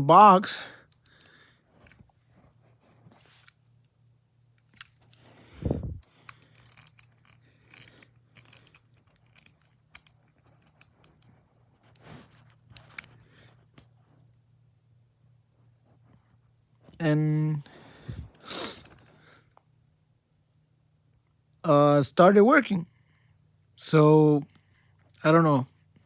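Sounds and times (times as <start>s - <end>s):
faint steady hum: 0.0s - 26.0s
pocket watch clicks and rattles: 6.0s - 11.3s.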